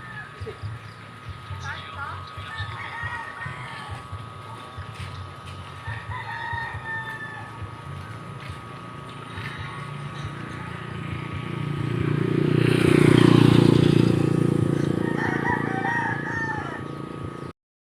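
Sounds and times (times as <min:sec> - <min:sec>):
rooster crowing: 0:00.0 - 0:00.5, 0:02.4 - 0:04.4, 0:05.8 - 0:08.0, 0:09.4 - 0:10.7, 0:14.3 - 0:17.3.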